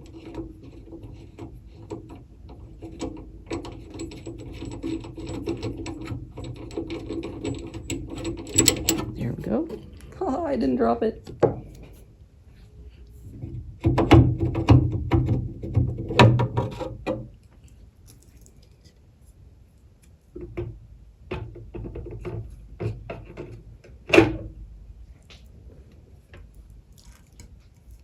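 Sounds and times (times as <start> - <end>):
metal parts clinking and knocking: 2.8 - 10.0.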